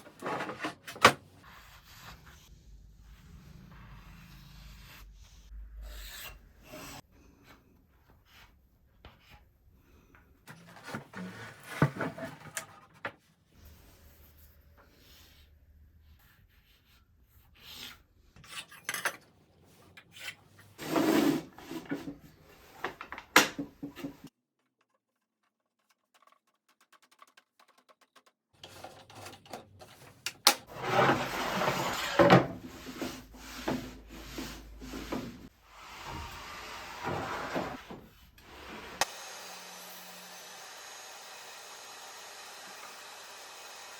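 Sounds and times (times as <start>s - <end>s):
wooden boards scraping: 30.7s - 38.0s.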